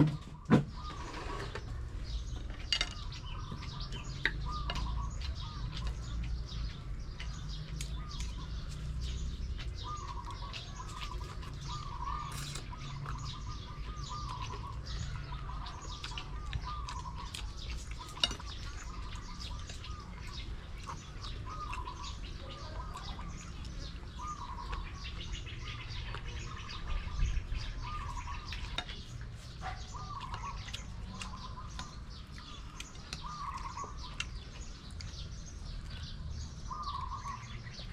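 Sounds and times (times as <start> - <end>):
bird warbling call: 33.1 - 34.3.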